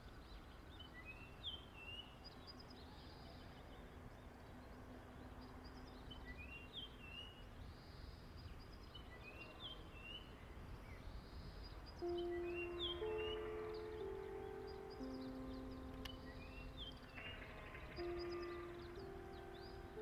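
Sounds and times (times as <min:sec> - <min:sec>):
songbird singing whistled notes: 0:00.0 - 0:20.0
low background rumble: 0:10.4 - 0:20.0.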